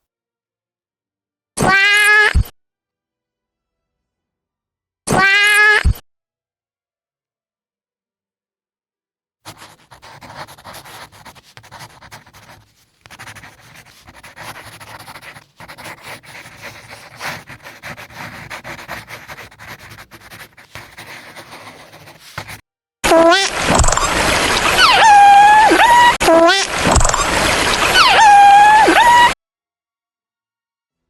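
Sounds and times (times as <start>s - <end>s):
breathy rustling noise: 9.5s - 22.6s
loud pitched sliding sound: 23.0s - 29.4s.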